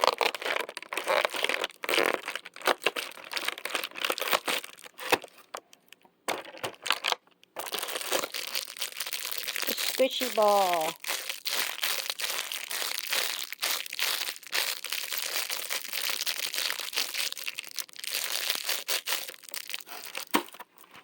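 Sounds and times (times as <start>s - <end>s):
packaging crinkling: 0.0s - 21.0s.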